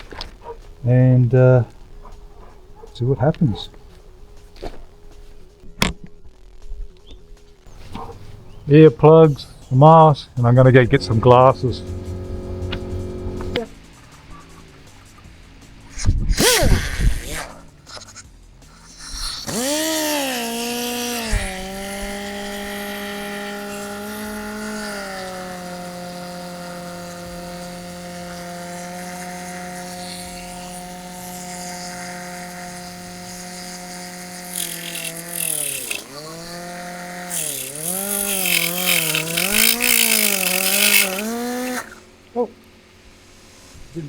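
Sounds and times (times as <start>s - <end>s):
pneumatic cut-off tool whine: 7.7s - 13.7s, 16.3s - 18.0s, 18.7s - 42.1s
grinding sheet steel: 7.9s - 13.7s, 18.9s - 42.0s.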